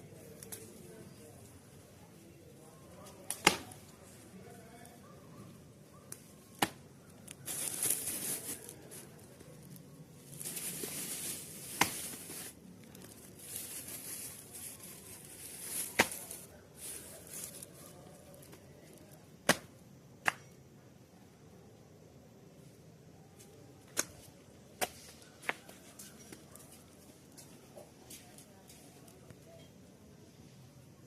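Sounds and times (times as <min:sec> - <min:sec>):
stems snapping: 0:00.4 - 0:00.7, 0:03.1 - 0:03.8, 0:06.1 - 0:07.8, 0:15.7 - 0:16.5
leaves rustling and tearing: 0:07.3 - 0:18.5.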